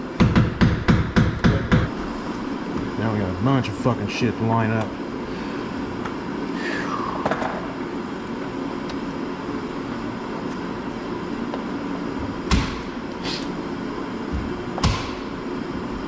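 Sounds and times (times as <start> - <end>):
steady background hum: 0.0 - 16.0
sharp knocks: 12.5 - 12.9, 14.8 - 15.2.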